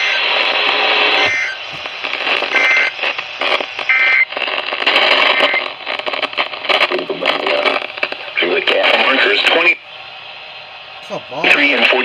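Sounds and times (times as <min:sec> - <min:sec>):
radio static and hiss: 0:00.0 - 0:12.0
buzzy digital squawks: 0:01.2 - 0:01.6, 0:02.5 - 0:03.0.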